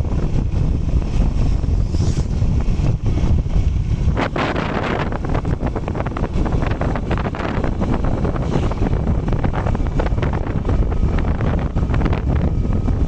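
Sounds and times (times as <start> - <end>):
motorcycle engine running: 0.0 - 13.0
wind buffeting microphone: 0.0 - 13.0.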